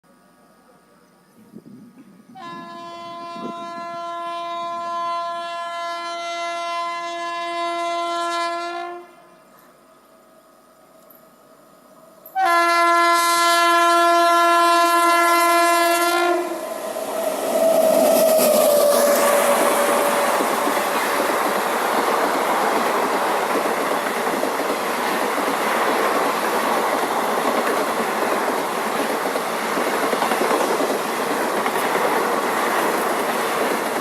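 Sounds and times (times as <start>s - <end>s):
locomotive air horn blasts: 2.3s - 9.3s, 12.4s - 16.8s, 17.5s - 20.7s
train rushing past: 12.4s - 34.0s
train wheels on rails: 15.7s - 34.0s.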